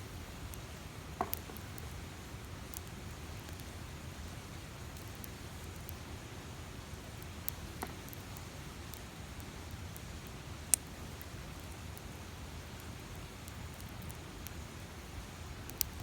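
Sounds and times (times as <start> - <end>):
campfire crackling and popping: 0.1 - 16.0.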